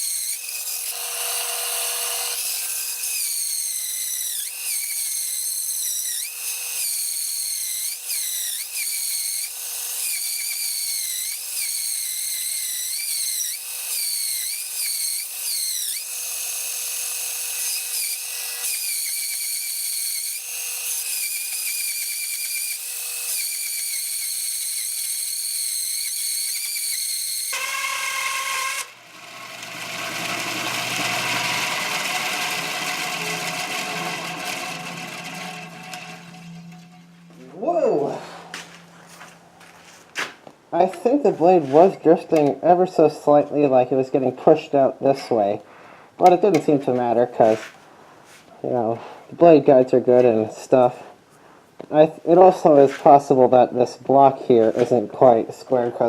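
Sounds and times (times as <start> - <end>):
band saw whining: 0.0 - 39.5
low steady hum: 33.2 - 39.9.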